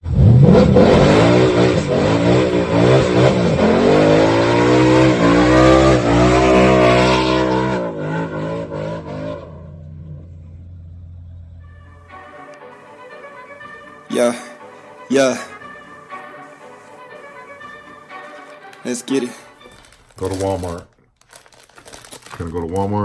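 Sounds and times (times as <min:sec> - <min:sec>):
car engine revving hard: 0:00.0 - 0:11.6.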